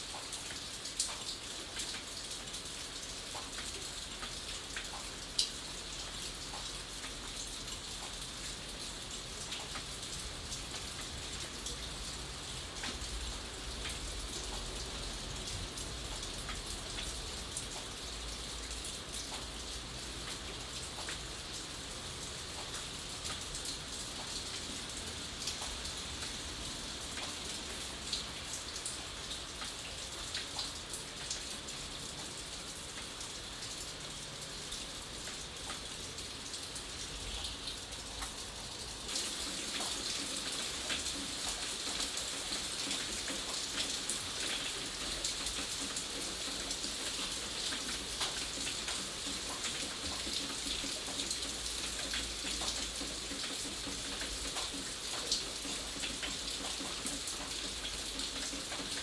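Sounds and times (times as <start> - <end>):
rain pattering on a surface: 0.0 - 59.0.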